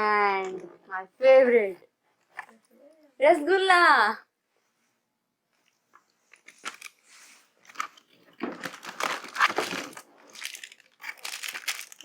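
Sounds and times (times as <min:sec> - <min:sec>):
plastic snack packets crinkling: 0:06.3 - 0:12.0.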